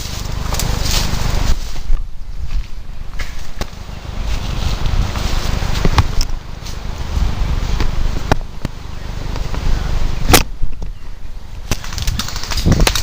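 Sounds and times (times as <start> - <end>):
low microphone rumble: 0.0 - 13.0.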